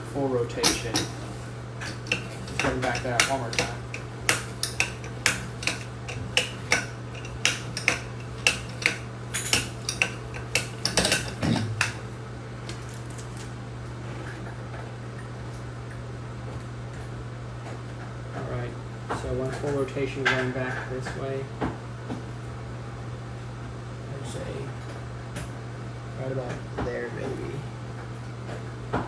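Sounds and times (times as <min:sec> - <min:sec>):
steady low hum: 0:00.0 - 0:29.0
metal trim parts clinking: 0:00.4 - 0:13.5.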